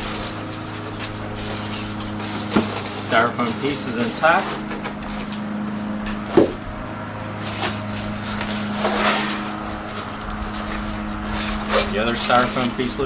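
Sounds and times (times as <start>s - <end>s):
steady low hum: 0.0s - 13.0s
sharp knock: 6.3s - 6.6s.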